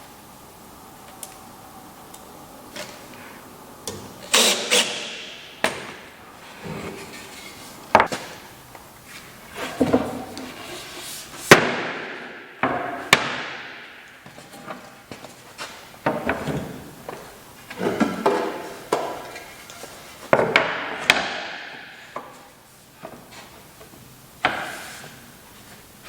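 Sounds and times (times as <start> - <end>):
wood and tools knocking: 7.9 - 8.2.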